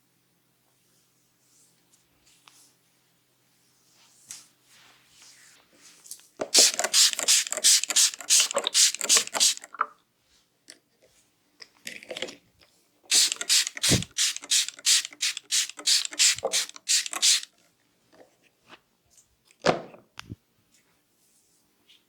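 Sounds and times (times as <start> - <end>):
percussive massage strokes: 13.2 - 17.5.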